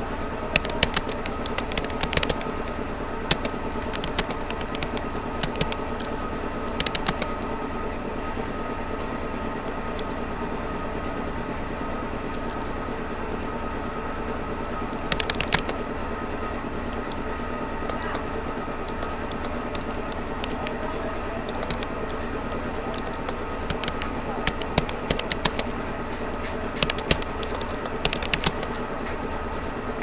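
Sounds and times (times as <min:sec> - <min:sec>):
droning background noise: 0:00.0 - 0:30.0
keyboard keys clicking: 0:00.4 - 0:07.5, 0:14.8 - 0:29.4.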